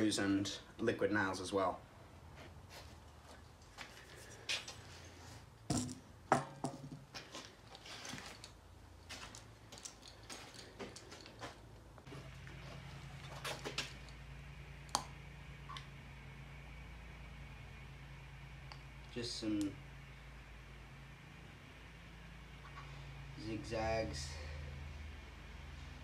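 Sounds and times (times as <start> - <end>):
low steady hum: 0.0 - 26.0
tools being handled: 5.7 - 11.7.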